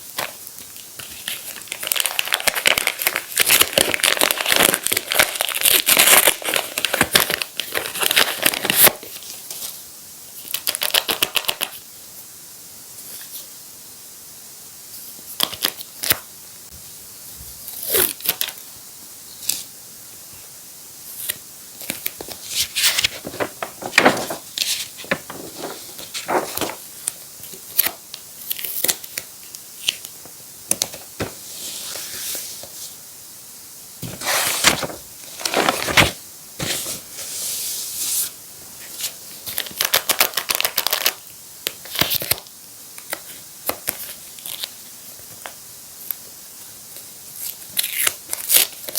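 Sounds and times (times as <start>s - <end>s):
paper crinkling and tearing: 1.0s - 9.0s, 21.2s - 27.2s, 34.0s - 37.0s, 39.0s - 41.2s, 47.4s - 48.9s.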